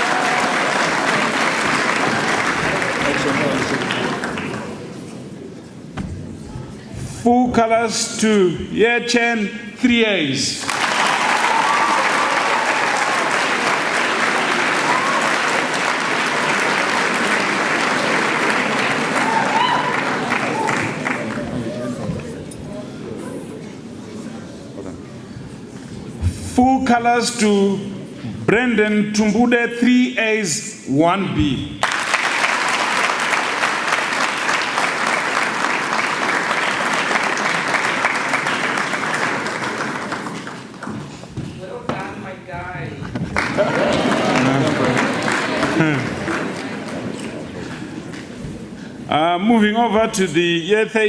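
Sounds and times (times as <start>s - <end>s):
audience applauding: 0.0s - 5.0s, 10.6s - 22.2s, 31.8s - 41.2s, 43.2s - 48.4s
faint voices: 19.8s - 26.2s.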